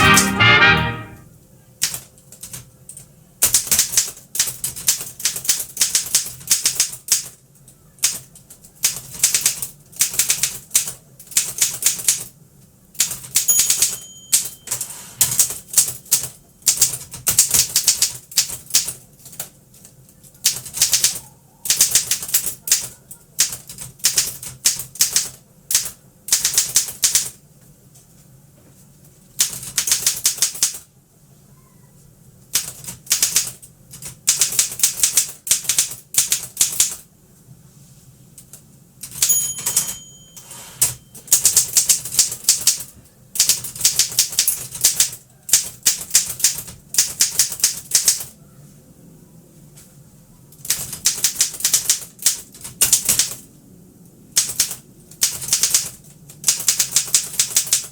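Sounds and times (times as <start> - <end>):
typewriter key strikes: 13.0 - 19.5, 39.0 - 42.8
typewriter margin bell: 13.3 - 16.3, 39.1 - 41.8.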